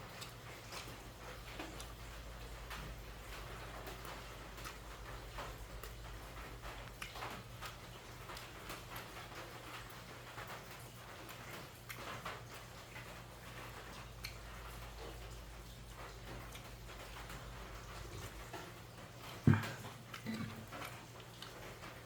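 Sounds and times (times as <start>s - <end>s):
person chewing close to microphone: 0.0s - 22.0s.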